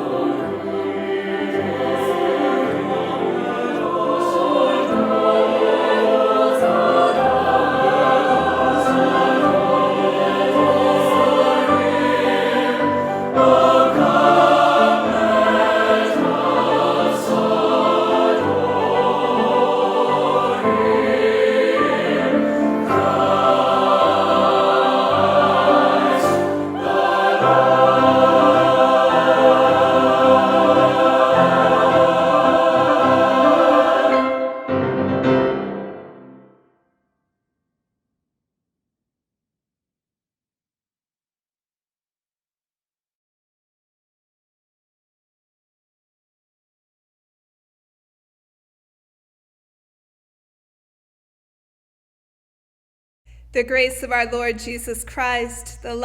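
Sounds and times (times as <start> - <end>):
choir singing a hymn: 0.0 - 36.4.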